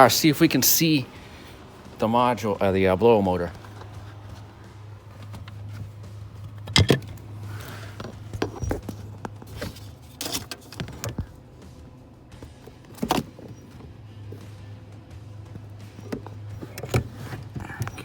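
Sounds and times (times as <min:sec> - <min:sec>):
low steady hum: 0:00.0 - 0:18.0
tools knocking and rattling: 0:03.5 - 0:11.4.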